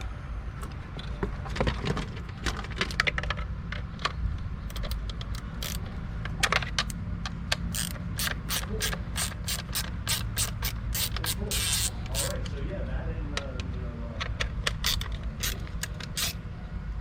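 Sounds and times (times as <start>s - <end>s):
ratchet wrench clicking: 4.7s - 5.9s, 6.8s - 12.5s, 14.6s - 16.4s.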